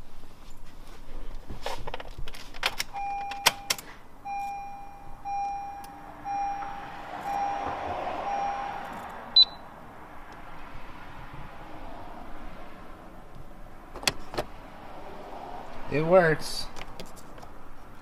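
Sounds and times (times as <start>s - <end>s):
steady beeps: 3.0s - 9.7s.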